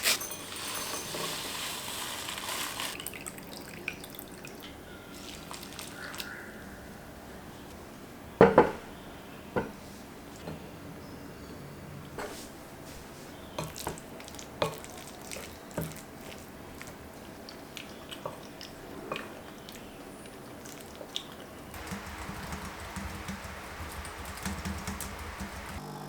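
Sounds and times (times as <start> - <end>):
utensils and dishes clicking: 0.0 - 3.0, 21.8 - 25.8
dense steady kitchen noise: 0.0 - 26.0.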